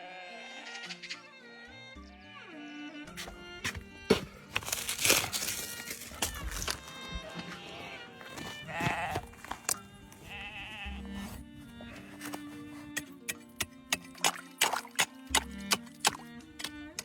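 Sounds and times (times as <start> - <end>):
background music: 0.0 - 17.0
sheep bleating: 7.2 - 11.4.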